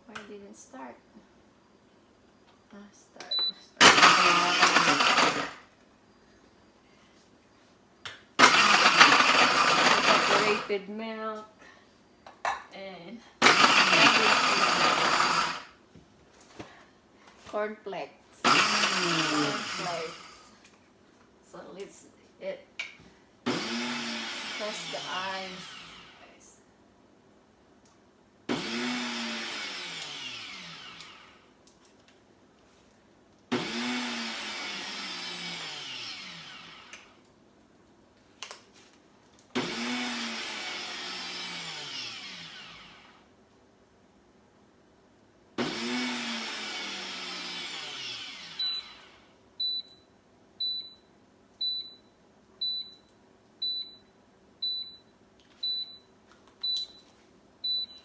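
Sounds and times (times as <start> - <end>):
blender crushing ice: 3.8 - 5.7, 8.4 - 10.8, 13.4 - 15.8, 18.4 - 20.4, 23.5 - 26.2, 28.5 - 31.5, 33.5 - 37.2, 39.5 - 43.3, 45.6 - 49.2.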